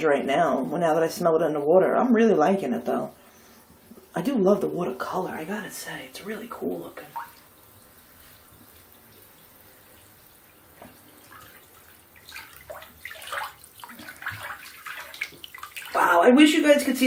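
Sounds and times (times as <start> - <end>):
water splashes and drips: 4.8 - 17.0.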